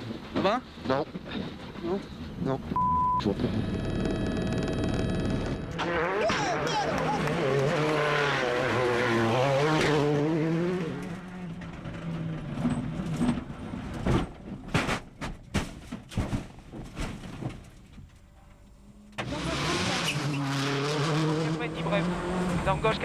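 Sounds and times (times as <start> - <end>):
car engine revving: 0.8 - 13.9, 18.8 - 23.0.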